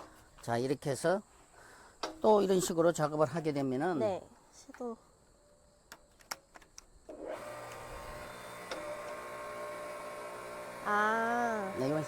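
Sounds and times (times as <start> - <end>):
log splitter pump humming: 7.2 - 12.0.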